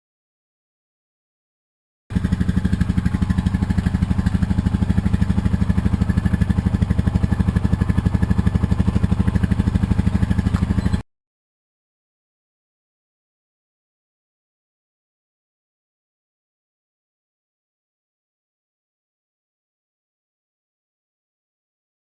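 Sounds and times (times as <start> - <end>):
atv engine idling: 2.1 - 11.0.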